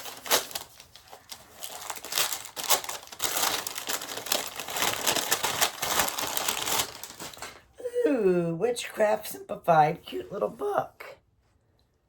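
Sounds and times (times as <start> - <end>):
wrapping crinkling and rustling: 0.0 - 7.7.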